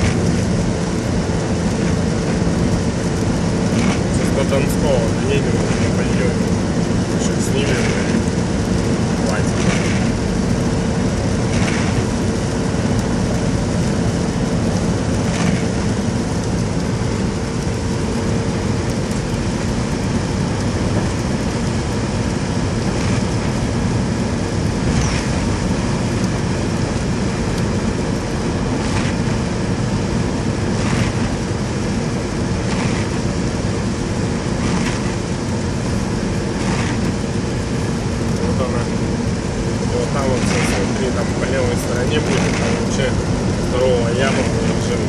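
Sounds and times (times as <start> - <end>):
car engine and tyre rumble: 0.0 - 45.0.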